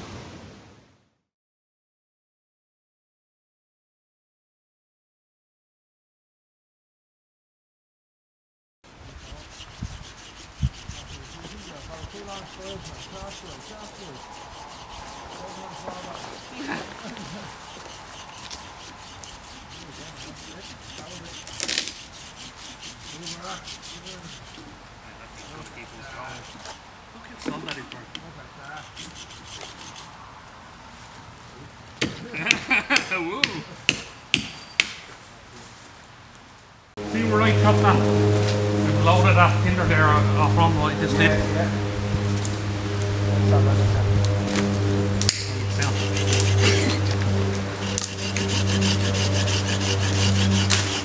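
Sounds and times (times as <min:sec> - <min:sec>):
hand saw cutting wood: 0:08.9 - 0:26.8, 0:28.6 - 0:30.2, 0:37.0 - 0:51.0
wood being chopped: 0:32.0 - 0:35.1, 0:44.5 - 0:45.6.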